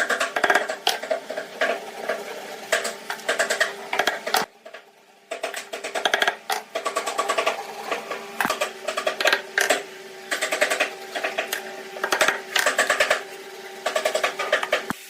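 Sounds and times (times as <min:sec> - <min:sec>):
power tool clattering: 0:13.8 - 0:15.0.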